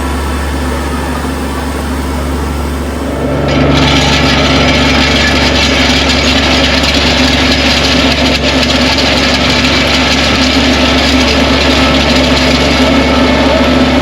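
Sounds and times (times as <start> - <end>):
hiss of cutting: 0.0 - 3.2
small engine running: 0.0 - 14.0.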